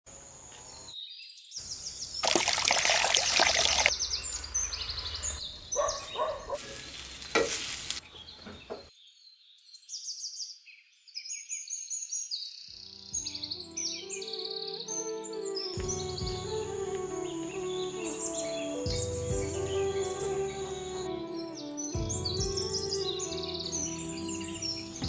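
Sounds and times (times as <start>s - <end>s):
small birds chirping: 0.1s - 14.7s, 15.8s - 21.1s, 22.3s - 25.0s
food sizzling in hot oil: 6.7s - 8.0s
cooking knocks: 7.2s - 7.6s.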